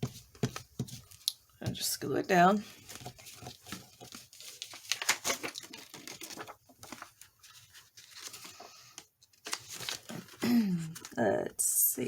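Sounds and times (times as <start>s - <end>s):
paper rustling and crinkling: 2.5s - 11.2s.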